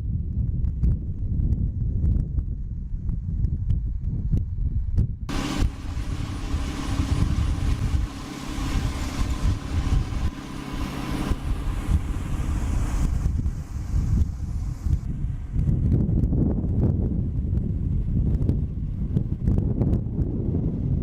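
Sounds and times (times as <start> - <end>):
low wind rumble: 0.0 - 21.0
loud hissing: 5.3 - 15.0
large engine running: 5.3 - 21.0.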